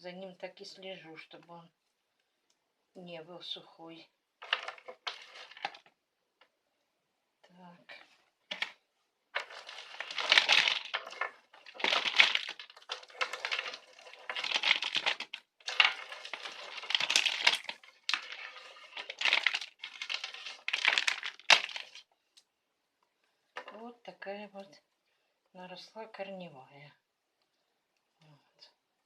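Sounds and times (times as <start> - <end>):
plastic pot crinkling: 4.4 - 6.0, 7.9 - 22.1
bark potting mix rustling: 9.4 - 22.0.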